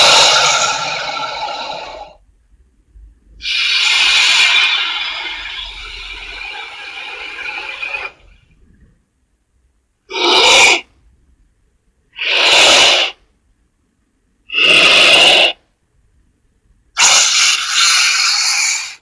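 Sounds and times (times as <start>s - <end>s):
breathy creature bursts: 0.0s - 2.2s, 3.4s - 8.3s, 10.1s - 10.9s, 12.2s - 13.2s, 14.5s - 15.6s, 17.0s - 19.0s
creature noise: 0.0s - 2.2s, 3.4s - 8.4s, 10.1s - 10.9s, 12.2s - 13.2s, 14.5s - 15.6s, 17.0s - 19.0s.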